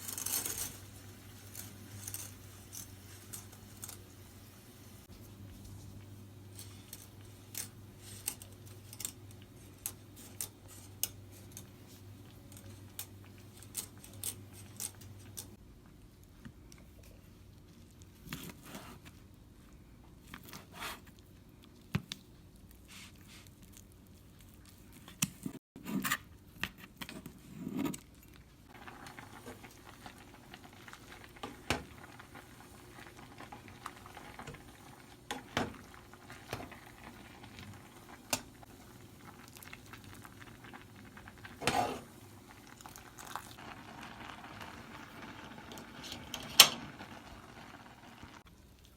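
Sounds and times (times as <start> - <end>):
utensils and packaging clinking: 0.0 - 4.0.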